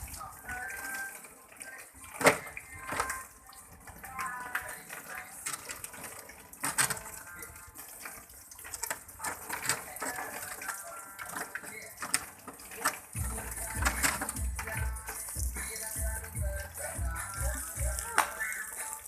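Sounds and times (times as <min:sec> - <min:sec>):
water running and splashing: 0:00.0 - 0:19.0
music with heavy beat: 0:13.2 - 0:18.9.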